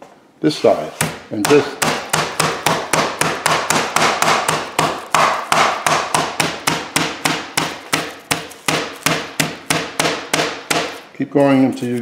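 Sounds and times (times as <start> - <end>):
meat mallet pounding chicken: 1.0 - 11.1.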